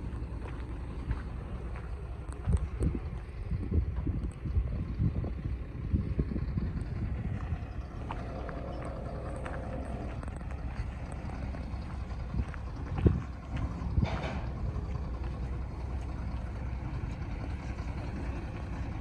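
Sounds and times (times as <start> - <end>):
engine running: 0.0 - 19.0
wind noise on microphone: 2.3 - 10.5, 11.8 - 14.9.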